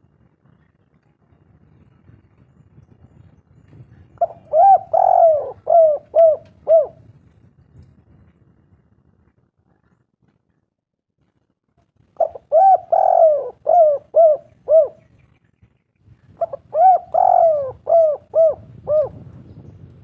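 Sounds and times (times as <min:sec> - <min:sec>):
dove cooing: 0:04.2 - 0:07.0, 0:12.2 - 0:15.2, 0:16.4 - 0:19.3.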